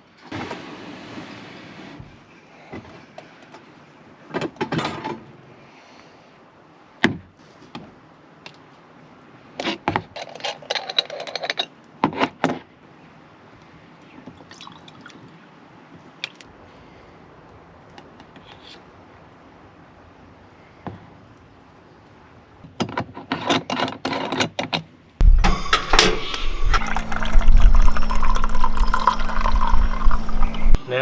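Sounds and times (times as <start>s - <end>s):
liquid pouring or gas hissing: 25.2s - 30.8s
cookware and utensils clinking: 25.4s - 30.8s.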